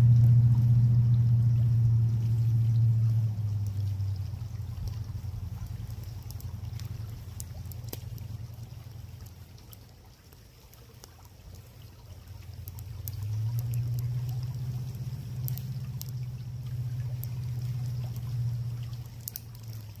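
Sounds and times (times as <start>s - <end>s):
low rumble: 0.0s - 9.9s, 12.0s - 20.0s
flowing creek water: 0.0s - 20.0s
wood fire crackling and popping: 0.0s - 20.0s.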